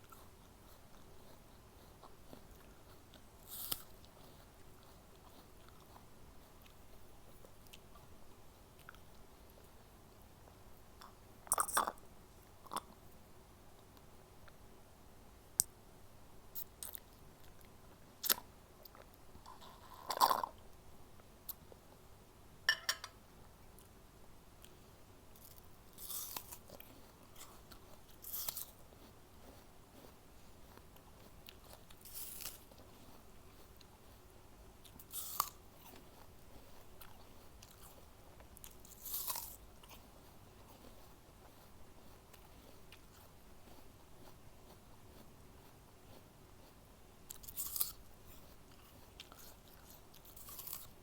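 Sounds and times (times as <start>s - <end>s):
crunching and chewing apple: 0.0s - 13.1s, 16.5s - 21.8s, 24.6s - 51.0s
apple crunching bite: 25.4s - 28.8s, 34.8s - 36.1s, 38.6s - 40.0s, 47.3s - 51.0s.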